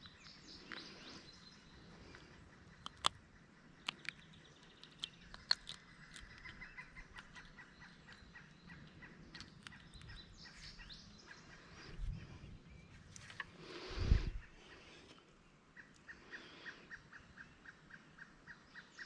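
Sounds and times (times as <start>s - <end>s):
faint bird calls: 0.0s - 19.0s
low steady background noise: 0.0s - 19.0s
sharp clicks and taps: 2.8s - 3.2s, 3.9s - 6.6s.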